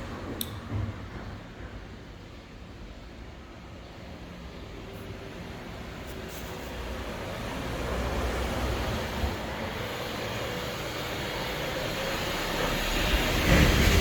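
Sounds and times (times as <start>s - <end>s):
passing vehicle rumble: 6.7s - 14.0s.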